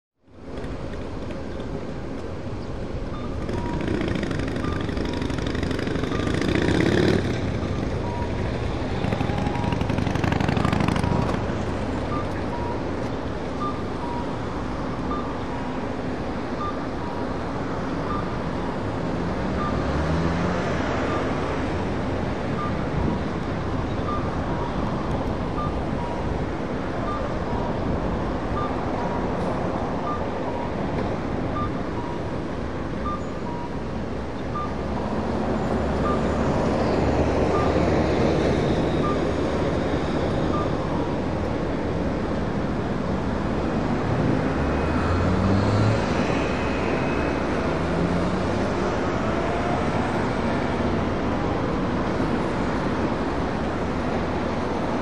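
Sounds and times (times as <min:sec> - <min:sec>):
fire engine and road noise: 0:00.2 - 0:55.0
siren rising and falling: 0:06.1 - 0:12.8.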